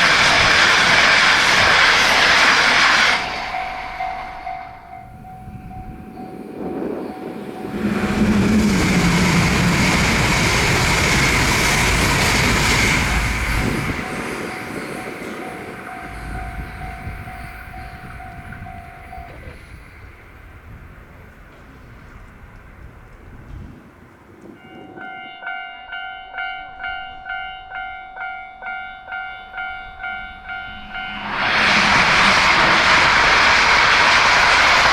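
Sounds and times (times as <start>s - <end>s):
train rushing past: 0.0s - 25.3s, 29.5s - 34.9s
level-crossing warning bell: 2.7s - 20.4s, 24.5s - 32.0s.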